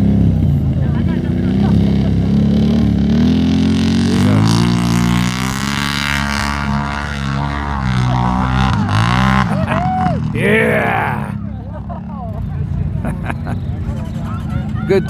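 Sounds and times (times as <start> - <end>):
atv engine revving: 1.0 - 9.6.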